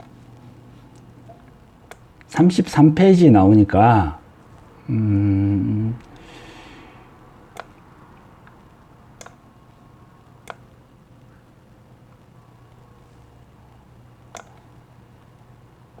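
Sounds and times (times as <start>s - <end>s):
short breath: 6.2s - 7.1s.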